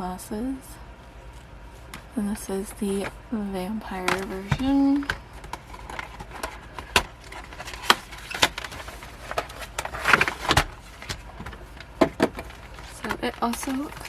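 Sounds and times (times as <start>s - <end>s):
packaging rustle: 4.0s - 14.0s.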